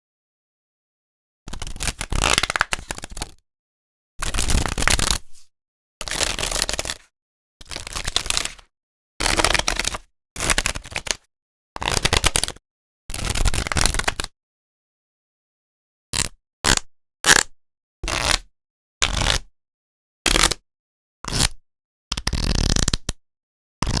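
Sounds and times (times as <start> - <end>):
playing cards riffle shuffled: 1.5 - 3.3, 4.3 - 5.5, 6.1 - 7.0.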